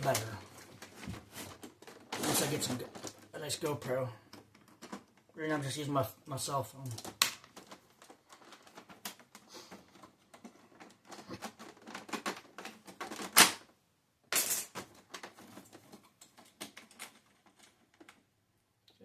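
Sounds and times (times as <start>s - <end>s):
printer parts clicking and rattling: 4.3s - 5.4s, 6.9s - 13.6s, 14.6s - 18.3s.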